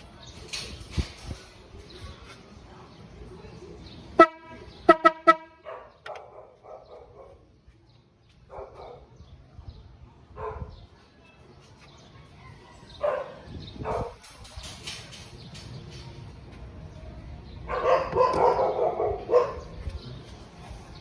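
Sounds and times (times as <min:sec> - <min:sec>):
dog barking: 0:05.6 - 0:07.4, 0:08.5 - 0:09.1, 0:10.4 - 0:10.8, 0:13.0 - 0:14.2, 0:17.7 - 0:19.8.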